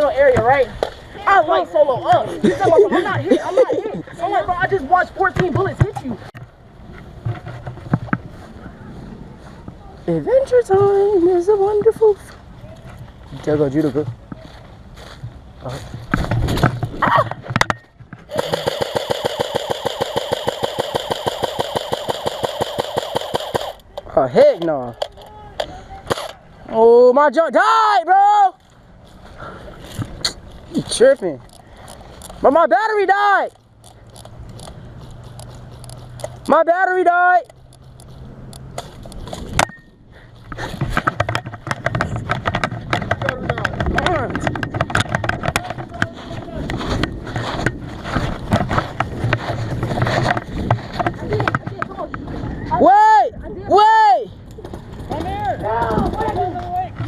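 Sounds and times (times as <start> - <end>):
airsoft gun firing full auto: 18.3 - 23.8
clatter and rustle of gear: 33.5 - 36.5, 37.4 - 39.6.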